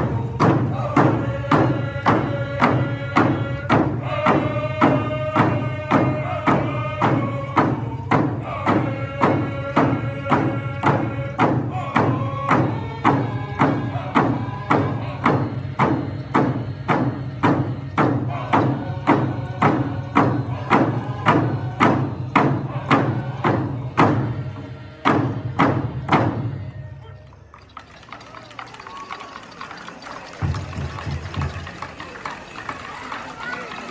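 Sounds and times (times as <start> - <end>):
big drum beating: 0.0 - 26.7
people singing: 0.0 - 26.9.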